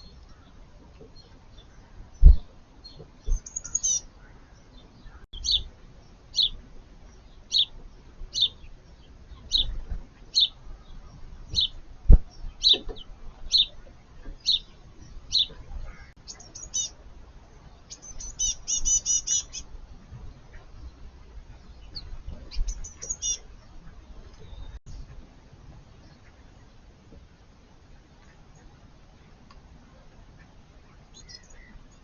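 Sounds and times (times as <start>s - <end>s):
songbird calling: 0.0s - 17.0s, 17.8s - 19.7s, 21.6s - 25.1s, 30.4s - 32.0s
sharp low knocks: 2.2s - 2.5s
bird trill: 3.3s - 4.1s, 15.3s - 17.0s, 17.9s - 19.7s, 22.0s - 23.5s.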